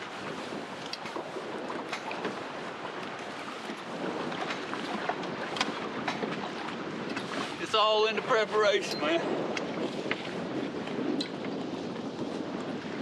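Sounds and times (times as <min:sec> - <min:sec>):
wind and waves rushing: 0:00.0 - 0:13.0.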